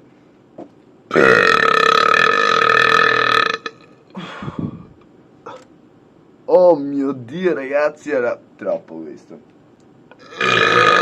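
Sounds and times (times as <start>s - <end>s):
man burping: 1.1s - 4.8s, 10.2s - 11.0s.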